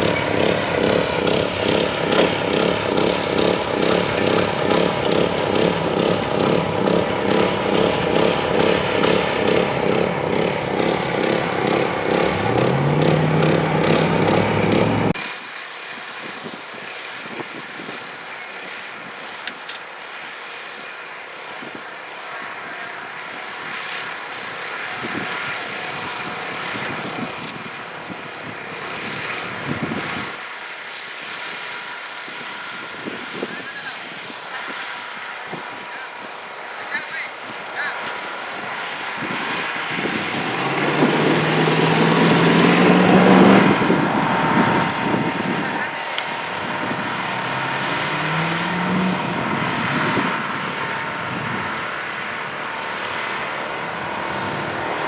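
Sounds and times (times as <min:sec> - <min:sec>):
engine running with pulsing beat: 0:00.0 - 0:21.6, 0:35.0 - 0:55.0
outdoor hum: 0:00.0 - 0:55.0.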